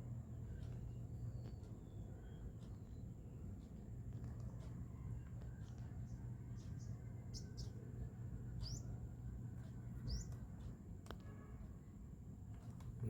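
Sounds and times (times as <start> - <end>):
low steady hum: 0.0 - 13.0
small bird chirping: 0.5 - 3.2, 5.4 - 10.7.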